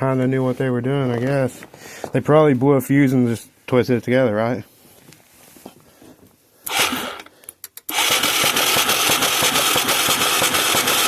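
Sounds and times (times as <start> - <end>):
electric starter cranking engine: 6.6 - 11.0
starter clicks: 6.7 - 11.0.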